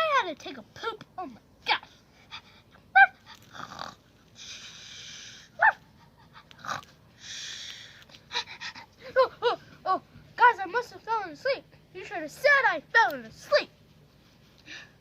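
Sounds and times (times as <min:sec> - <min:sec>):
child making breathy hisses: 0:04.4 - 0:05.7, 0:07.2 - 0:08.7
child making dog-like yips: 0:05.6 - 0:05.9.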